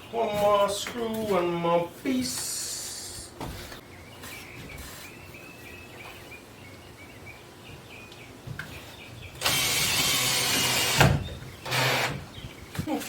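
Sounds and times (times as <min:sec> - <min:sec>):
cordless drill driving a screw: 0:09.4 - 0:12.2.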